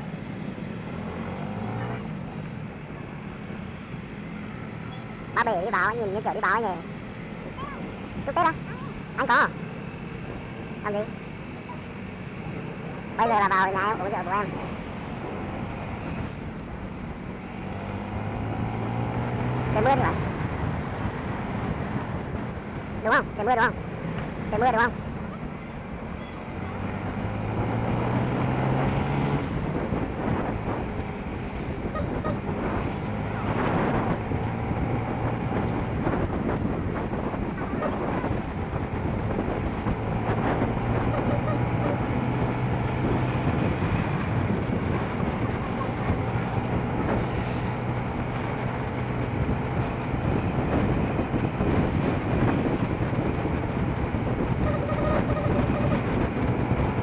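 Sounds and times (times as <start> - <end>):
vehicle engines idling: 0.0 - 28.4, 29.0 - 57.0
car horns: 31.8 - 32.8, 37.7 - 38.4, 41.0 - 42.2, 54.6 - 56.5.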